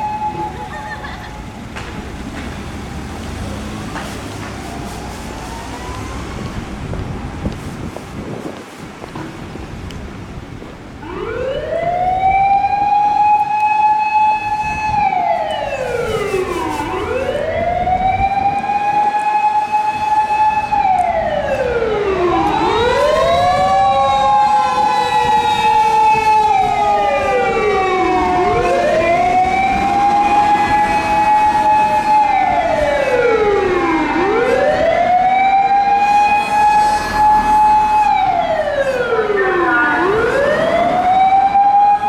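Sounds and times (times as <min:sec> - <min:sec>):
second siren: 0:00.0 - 0:01.0, 0:04.4 - 0:07.7, 0:11.0 - 0:42.0
fire engine siren wailing: 0:00.0 - 0:01.6, 0:02.8 - 0:08.0, 0:11.0 - 0:42.0.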